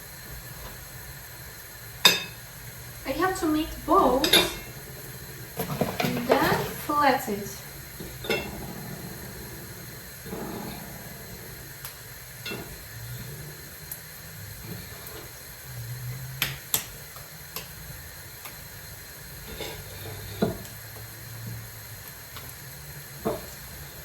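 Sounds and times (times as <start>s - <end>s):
pancakes sizzling in a frying pan: 0.0s - 24.0s
kitchen utensils clicking and knocking: 3.4s - 4.8s, 5.6s - 7.3s.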